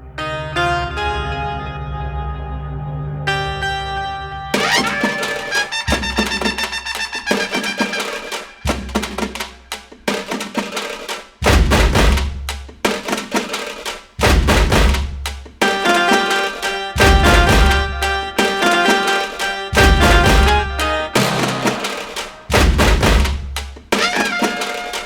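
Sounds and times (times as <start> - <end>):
melodic instrument lines: 0.0 - 9.1, 15.6 - 22.5
steady drum beat: 4.6 - 25.0
heavy bass hits: 11.4 - 12.5, 14.2 - 15.3, 17.0 - 18.3, 19.8 - 21.8, 22.5 - 23.6.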